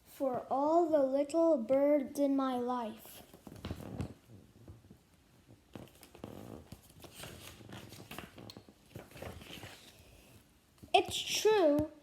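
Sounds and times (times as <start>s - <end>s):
paper rustling: 5.7s - 10.4s.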